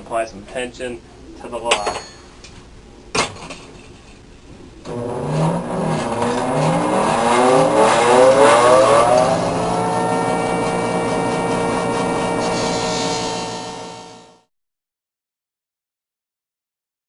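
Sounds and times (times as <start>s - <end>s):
electric grinder motor whining: 4.9s - 14.4s.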